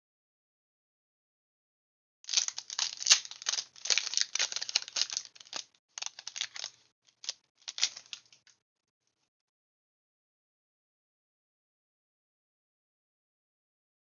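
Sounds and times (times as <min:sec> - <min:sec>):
foil wrapper tearing and crinkling: 0:02.3 - 0:08.4.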